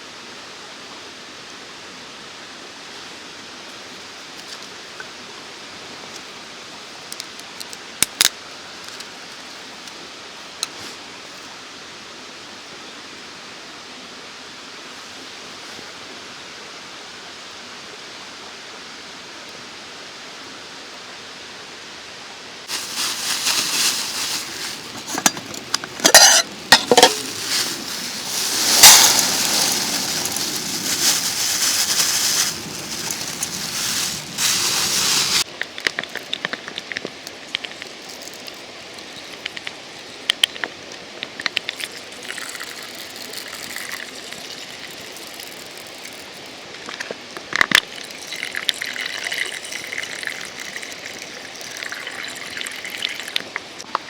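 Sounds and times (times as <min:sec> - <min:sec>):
food sizzling in a pan: 0:22.7 - 0:35.5
mountain stream rushing: 0:22.7 - 0:35.5.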